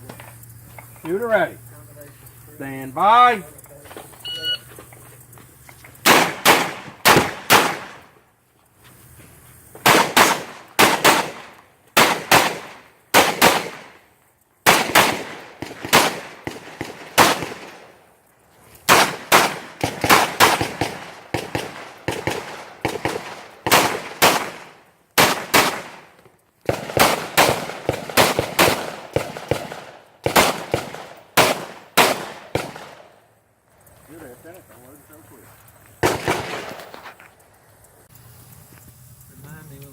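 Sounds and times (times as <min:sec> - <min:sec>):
rifle shots: 0:06.0 - 0:08.1, 0:09.8 - 0:14.0, 0:14.6 - 0:18.0, 0:18.9 - 0:33.1, 0:36.0 - 0:37.0.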